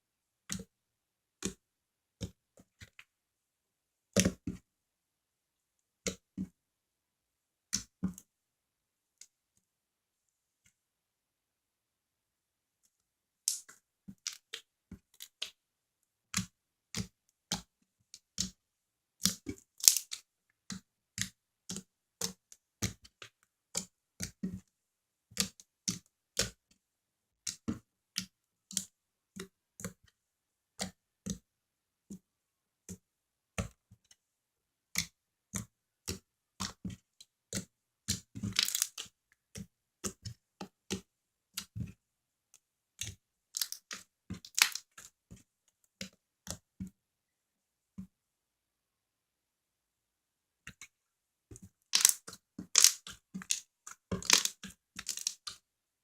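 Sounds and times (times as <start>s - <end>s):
slime squeezed with wet pops: 43.0s - 45.1s, 51.9s - 55.6s.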